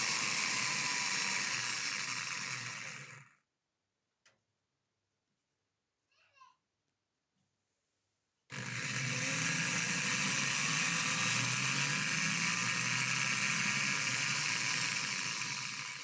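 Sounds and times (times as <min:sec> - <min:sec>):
electric drill boring into plywood: 0:00.0 - 0:03.3, 0:08.5 - 0:16.0.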